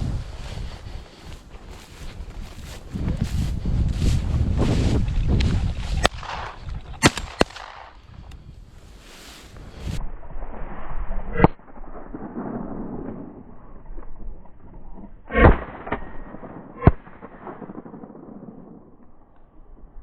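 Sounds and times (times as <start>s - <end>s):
wind noise on microphone: 0.0s - 15.6s
shotgun shots: 6.0s - 8.0s.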